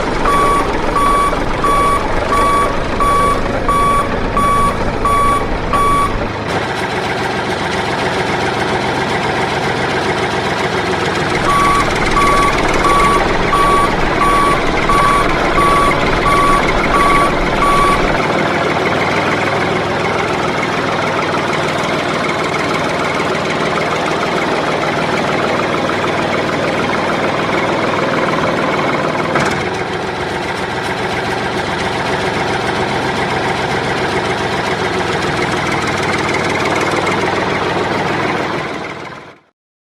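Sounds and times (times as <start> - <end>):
reversing alarm beeping: 0.0 - 6.4, 11.3 - 18.2
vehicle engine running: 0.0 - 39.5.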